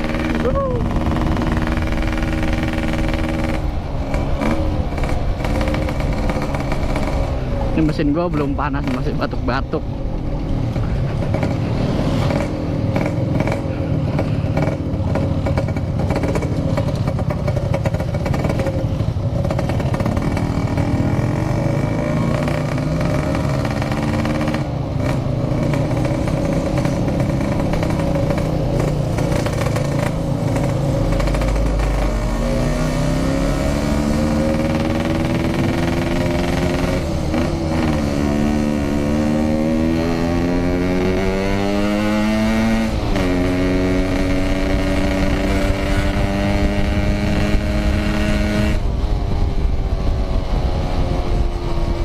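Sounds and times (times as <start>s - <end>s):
two-stroke engine crackling: 0.0s - 9.6s, 10.7s - 32.3s, 33.2s - 41.4s
rider speaking: 7.7s - 10.0s.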